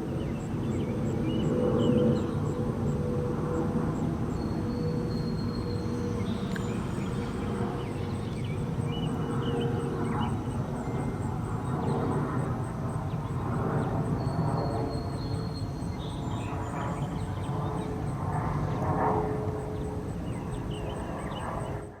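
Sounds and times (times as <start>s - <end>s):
distant warning sirens: 2.8s - 13.4s.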